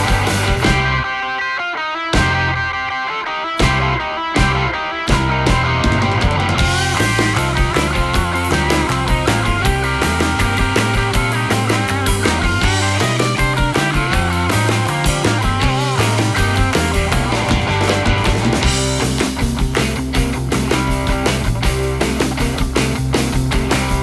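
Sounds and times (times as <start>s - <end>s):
rock music: 0.0s - 24.0s.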